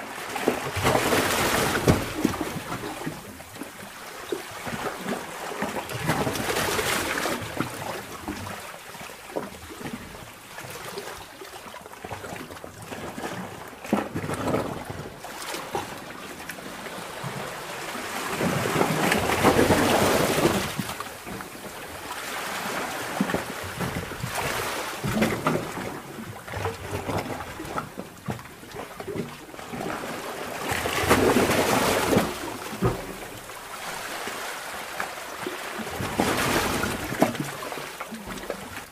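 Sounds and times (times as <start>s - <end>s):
seawater surging underwater: 0.0s - 38.9s.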